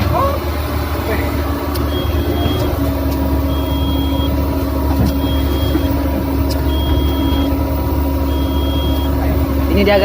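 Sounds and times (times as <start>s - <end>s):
excavator diesel engine running: 0.0s - 10.0s
high warning beeps: 1.8s - 2.8s, 3.4s - 4.5s, 5.1s - 9.4s.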